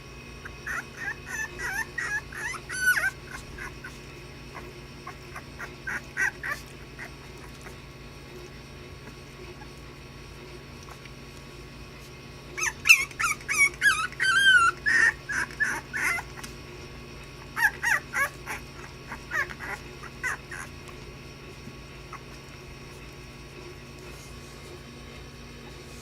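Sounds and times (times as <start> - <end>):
puppies yipping and whining: 0.4 - 8.0, 12.5 - 23.0.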